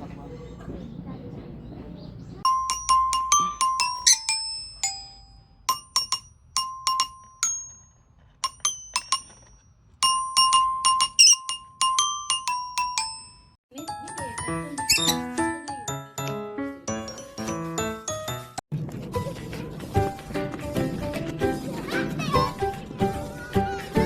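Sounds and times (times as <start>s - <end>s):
ringing glockenspiel notes: 2.5s - 18.6s.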